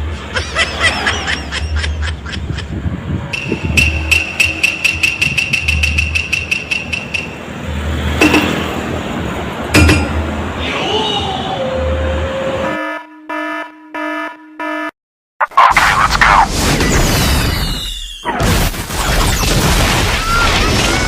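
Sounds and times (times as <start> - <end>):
vehicle horn tooting: 3.3 - 8.8
rapid even ticking: 3.4 - 7.4.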